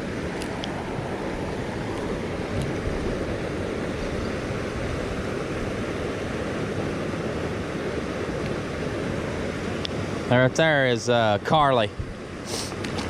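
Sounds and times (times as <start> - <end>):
water rushing over spillway: 0.0 - 13.0.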